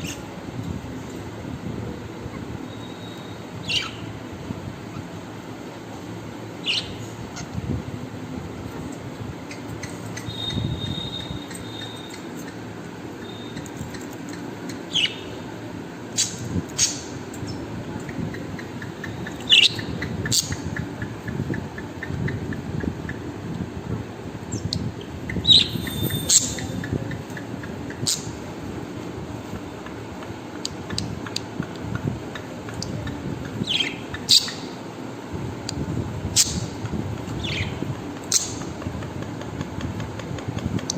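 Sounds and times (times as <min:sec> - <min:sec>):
low steady background noise: 0:00.0 - 0:40.9
bird chirping: 0:02.7 - 0:04.1, 0:06.6 - 0:07.5, 0:09.5 - 0:15.4, 0:18.3 - 0:20.9, 0:24.5 - 0:28.4, 0:32.3 - 0:34.8, 0:37.4 - 0:38.6.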